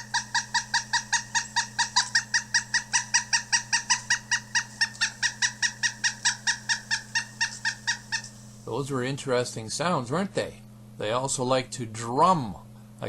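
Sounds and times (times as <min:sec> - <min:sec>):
woodpecker calling: 0:00.0 - 0:08.8.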